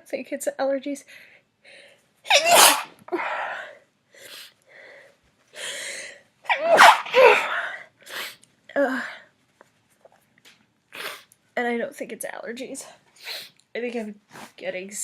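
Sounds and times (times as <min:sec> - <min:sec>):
woman sneezing: 0:02.3 - 0:03.4, 0:06.5 - 0:07.6.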